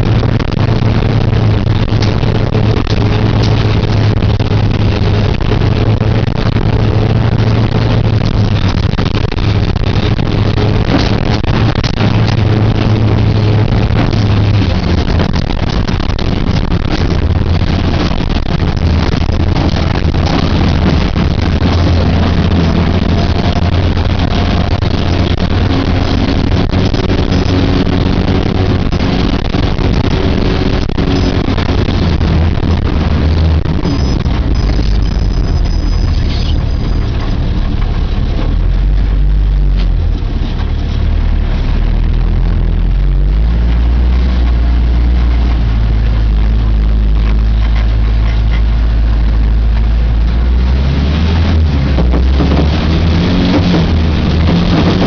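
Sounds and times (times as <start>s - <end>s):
knocks and rattles: 0.0s - 41.1s
rally car engine running hard: 0.0s - 55.0s.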